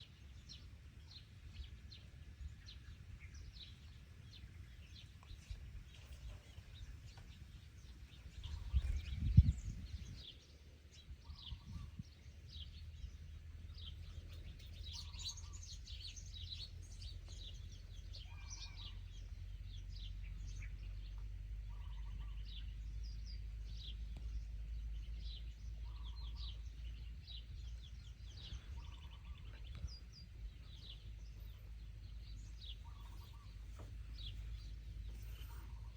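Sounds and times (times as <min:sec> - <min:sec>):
small birds chirping: 0:00.0 - 0:35.9
low hum: 0:18.9 - 0:35.9.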